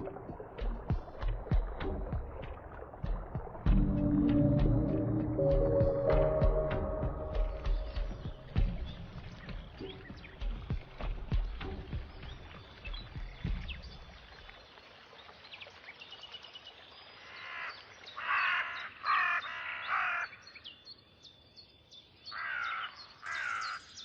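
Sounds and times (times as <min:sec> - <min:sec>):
small birds chirping faintly: 0:00.0 - 0:24.0
harsh cawing bird calls: 0:17.4 - 0:20.4, 0:22.3 - 0:24.0.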